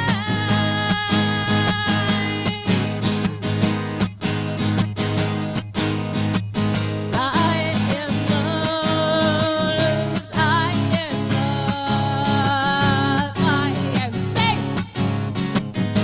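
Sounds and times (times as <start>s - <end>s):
person singing with vibrato: 0.0s - 3.2s, 7.1s - 15.2s
strummed acoustic guitar: 0.0s - 16.0s.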